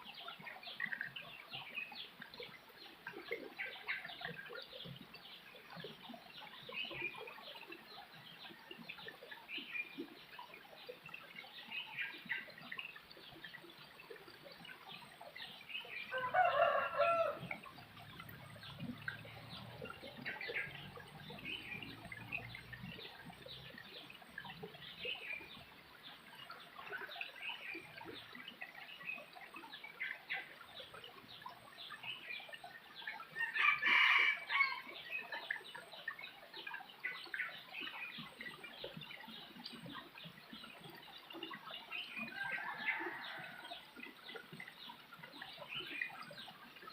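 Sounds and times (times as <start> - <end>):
small birds chirping: 0.0 - 33.4, 34.5 - 46.9
rooster crowing: 16.1 - 17.5.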